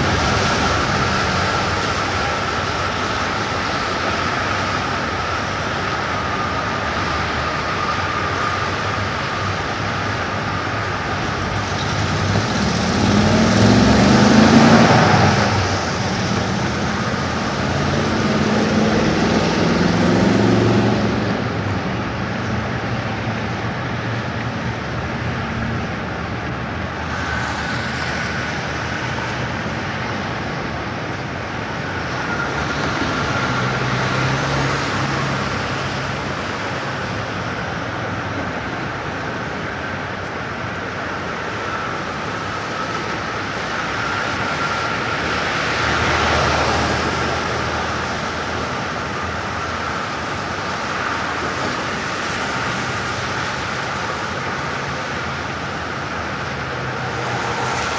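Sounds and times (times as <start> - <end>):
street traffic passing: 0.0 - 57.9.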